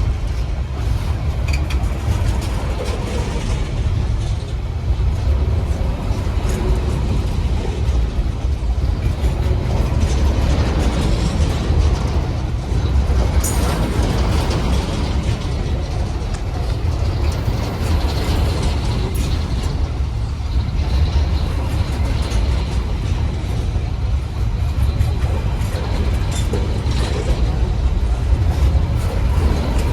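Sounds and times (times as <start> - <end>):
deep locomotive engine rumble: 0.0 - 29.9
train wheels on rails: 0.0 - 29.9.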